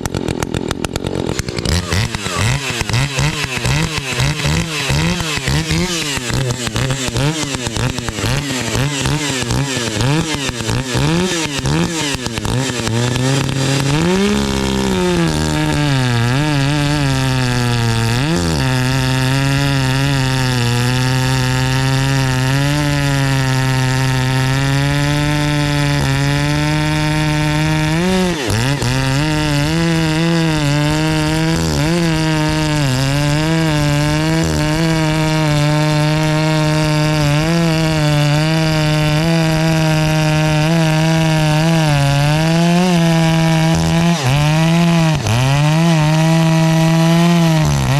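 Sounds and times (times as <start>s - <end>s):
chainsaw running at high revs: 0.0s - 47.9s.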